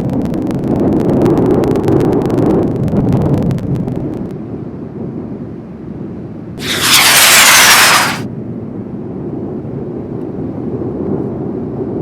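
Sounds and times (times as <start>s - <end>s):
loud rushing hiss: 6.6s - 8.3s.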